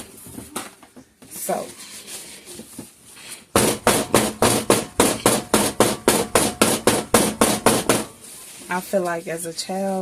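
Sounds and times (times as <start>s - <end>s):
rapid loud knocks: 3.6s - 8.2s.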